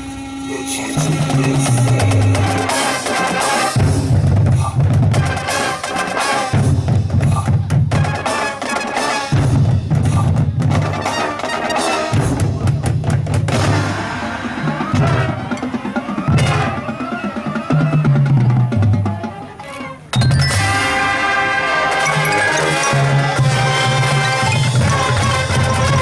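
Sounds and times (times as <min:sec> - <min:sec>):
marching band playing: 0:00.0 - 0:26.0
rapid drum strikes: 0:01.0 - 0:19.4.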